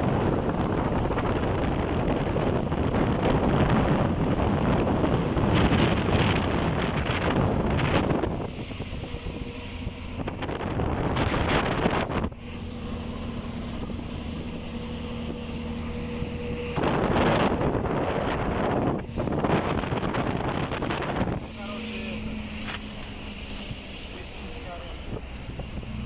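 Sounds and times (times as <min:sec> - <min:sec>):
low mechanical hum: 0:00.0 - 0:26.0
wind buffeting microphone: 0:00.0 - 0:26.0.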